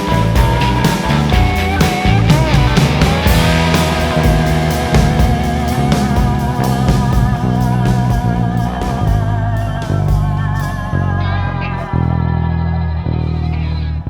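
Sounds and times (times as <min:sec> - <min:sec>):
drums and cymbals: 0:00.0 - 0:11.0
bass guitar: 0:00.0 - 0:14.0
electric guitar wavering notes: 0:00.0 - 0:14.0.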